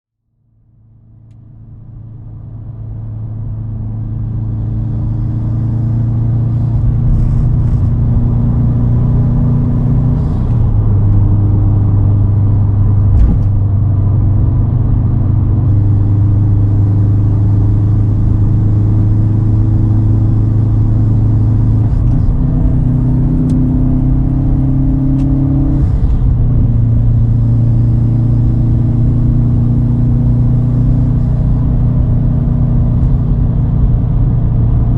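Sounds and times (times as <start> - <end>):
car engine low drone: 0.2 - 34.9
brief thump: 13.1 - 13.6.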